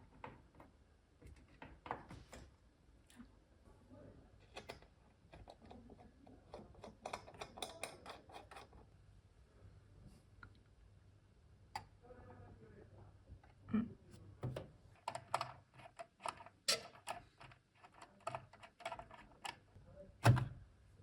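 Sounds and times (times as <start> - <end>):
faint low hum: 0.0 - 21.0.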